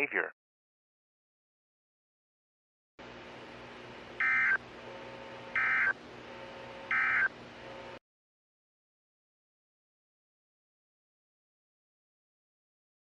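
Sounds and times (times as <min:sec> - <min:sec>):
steady hum and hiss: 0:03.0 - 0:08.0
data bursts: 0:06.9 - 0:07.3.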